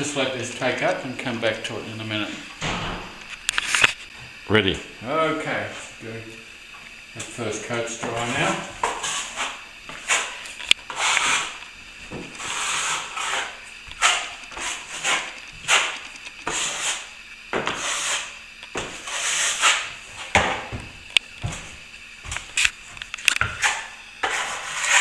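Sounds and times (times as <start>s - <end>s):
plastering tool scraping wall: 7.2s - 25.0s.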